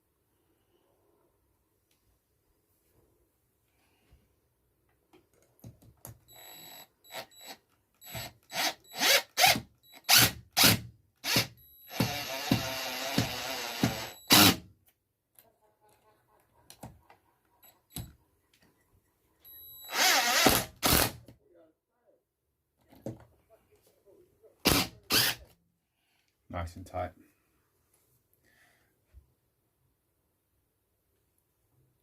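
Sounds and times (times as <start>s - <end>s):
impact driver driving a screw: 7.1s - 14.6s, 19.9s - 21.2s, 24.7s - 25.5s.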